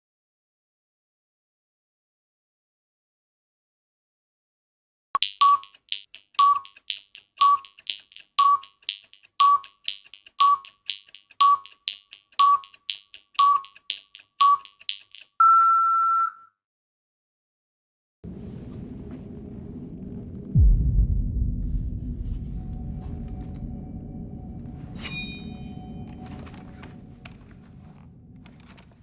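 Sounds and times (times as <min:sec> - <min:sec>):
electronic ticking: 0:05.2 - 0:15.7
short electronic beeps: 0:05.2 - 0:16.6
long higher beep: 0:15.4 - 0:16.5
low rumbling hum: 0:18.2 - 0:29.0.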